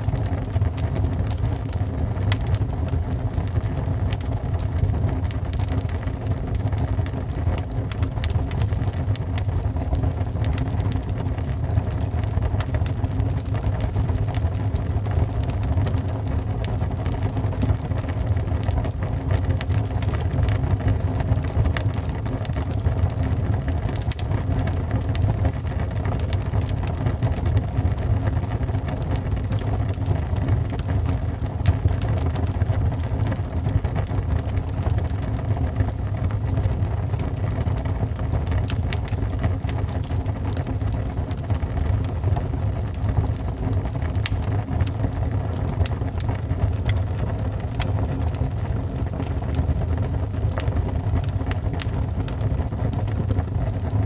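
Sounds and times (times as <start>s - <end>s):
fire crackling and popping: 0.0s - 54.0s
wood fire roaring: 0.0s - 54.0s.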